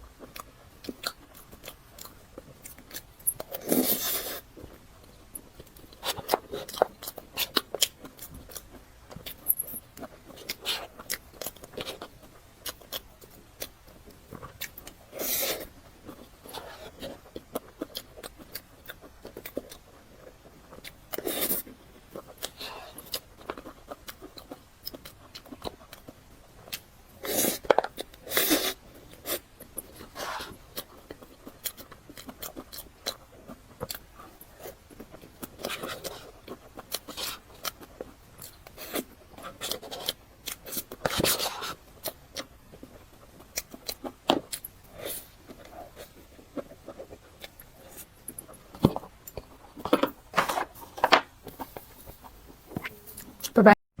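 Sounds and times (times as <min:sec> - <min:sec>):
close-miked eating sounds: 0:00.0 - 0:53.8
chewing and mouth sounds: 0:00.1 - 0:53.6
spoon clicks and scrapes: 0:26.6 - 0:53.6.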